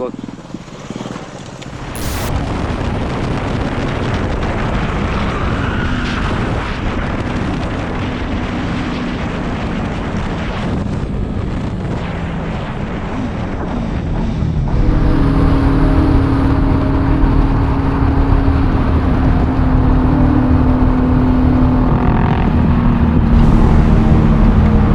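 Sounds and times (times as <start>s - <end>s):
wind noise on microphone: 0.3s - 24.9s
motorcycle engine: 14.2s - 24.9s.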